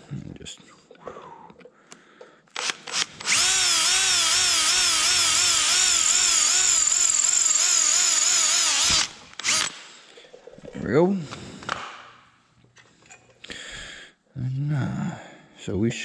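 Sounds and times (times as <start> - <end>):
power drill running: 2.6 - 9.9.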